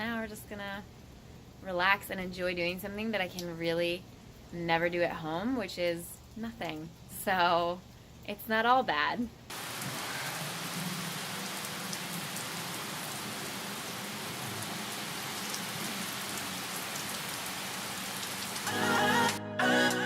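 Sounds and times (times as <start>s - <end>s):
steady rain hiss: 0.0s - 20.0s
loud music: 18.7s - 20.0s.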